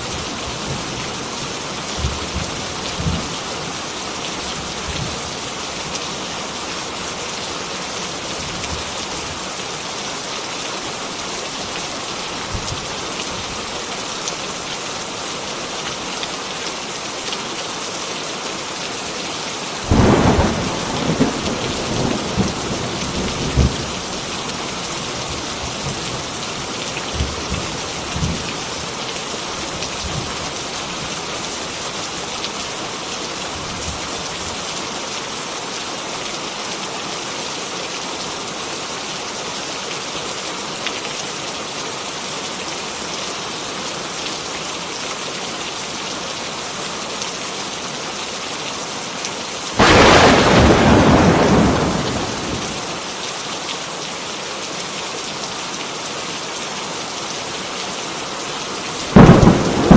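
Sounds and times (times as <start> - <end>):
heavy rain: 0.0 - 59.9
loud thunderclap: 19.9 - 23.9, 49.8 - 52.9, 59.1 - 59.9
distant thunder rumbles: 49.8 - 52.9, 59.1 - 59.9.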